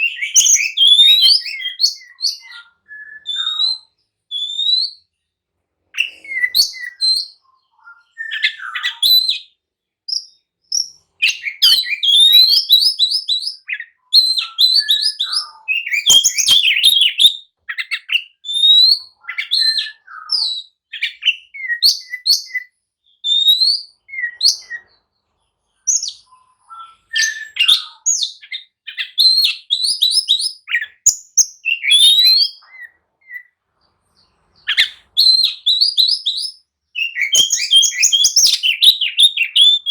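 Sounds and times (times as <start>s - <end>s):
bird whistling and chattering: 0.0s - 5.0s, 6.0s - 24.9s, 25.9s - 33.5s, 34.6s - 39.9s.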